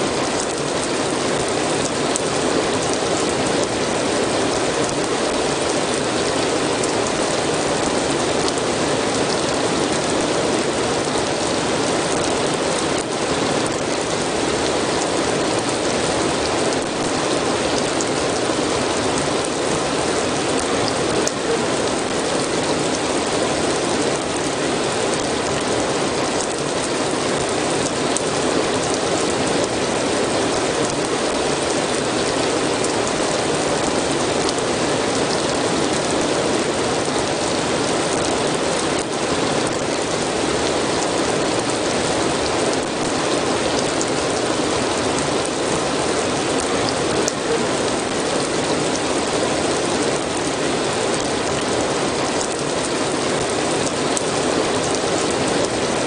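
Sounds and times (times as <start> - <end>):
steady rain: 0.0 - 56.0
raindrops ticking: 0.1 - 49.1.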